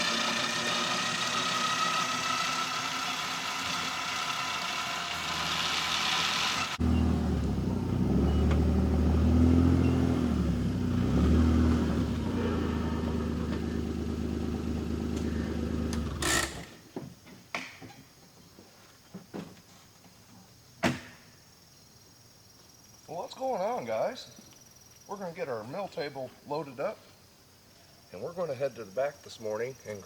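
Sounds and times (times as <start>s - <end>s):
vehicle engine revving: 0.0s - 16.6s.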